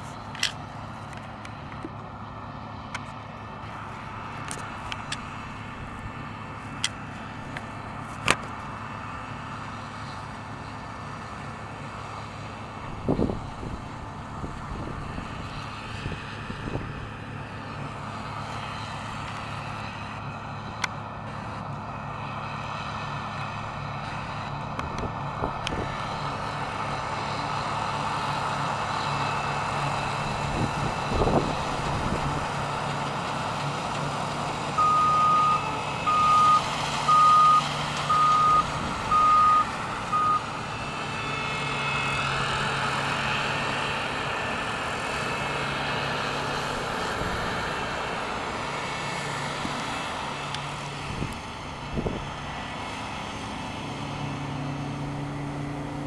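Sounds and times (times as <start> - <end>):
machinery engine running: 0.0 - 56.0
reversing alarm beeps: 34.8 - 40.6.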